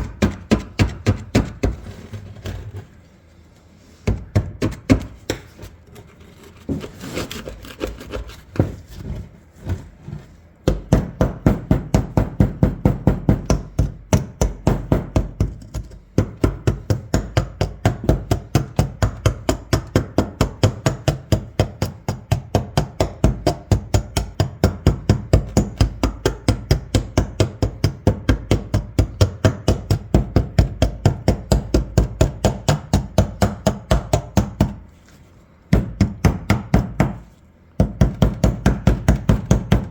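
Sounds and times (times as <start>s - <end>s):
tool knocking on metal barrels: 0.0s - 1.8s, 10.6s - 34.8s, 35.7s - 37.2s, 37.8s - 39.9s.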